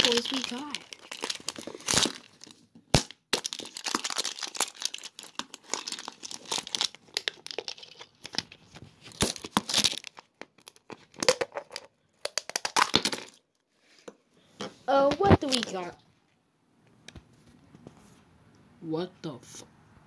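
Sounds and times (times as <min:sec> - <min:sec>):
wrapping torn and crumpled: 0:00.0 - 0:13.4.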